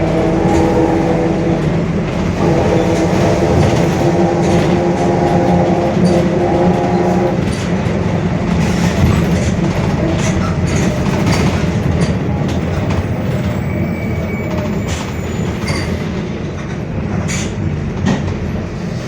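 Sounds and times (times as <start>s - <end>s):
differential whining: 0.0s - 11.7s
bus engine rumble: 0.0s - 19.0s.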